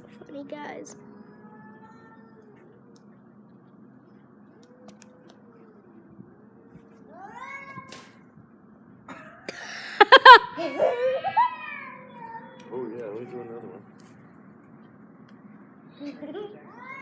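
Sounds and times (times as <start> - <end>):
cats meowing and yowling: 10.5 - 12.7.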